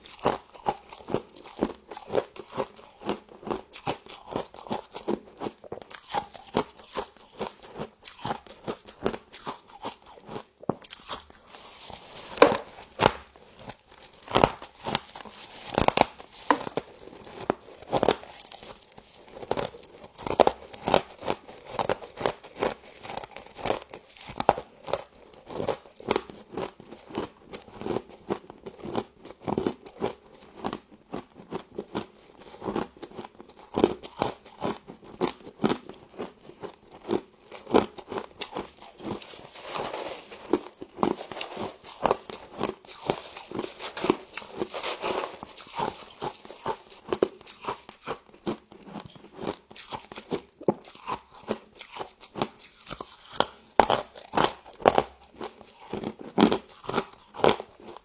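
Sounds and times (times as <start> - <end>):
person chewing crunchy frost: 0.0 - 58.0.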